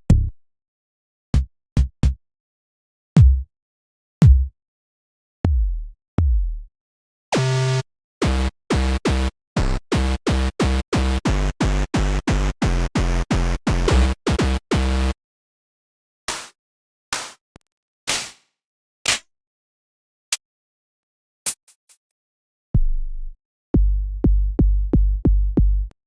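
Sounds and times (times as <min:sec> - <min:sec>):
synth kick drum hits: 0:05.5 - 0:06.6
noisy snare hits: 0:18.1 - 0:18.4.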